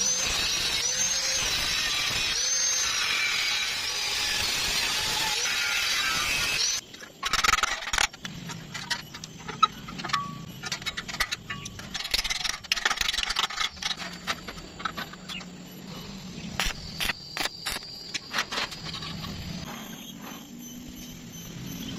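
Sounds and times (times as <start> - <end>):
metal scraping: 5.9 - 15.7
metal clinks and knocks: 7.2 - 15.6.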